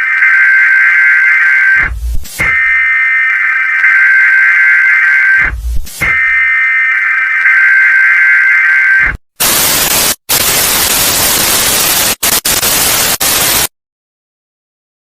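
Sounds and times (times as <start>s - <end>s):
loud static hiss: 9.1s - 13.7s.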